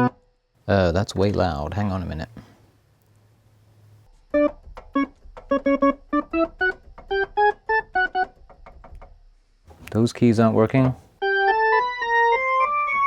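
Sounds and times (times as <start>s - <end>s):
faint low mains buzz: 0.5s - 4.3s.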